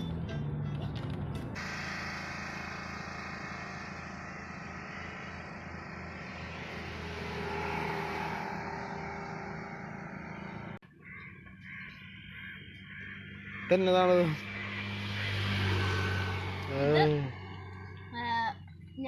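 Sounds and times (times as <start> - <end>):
moving vehicle rumble: 0.0 - 19.0.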